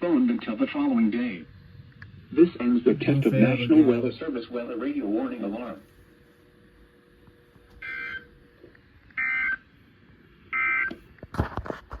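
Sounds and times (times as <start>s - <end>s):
faint radio hiss: 0.0s - 7.7s.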